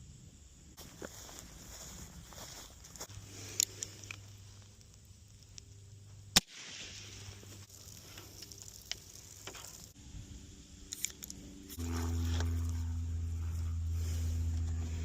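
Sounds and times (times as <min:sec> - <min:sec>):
low hum: 0:03.0 - 0:15.0
rifle shot crack: 0:06.4 - 0:07.5.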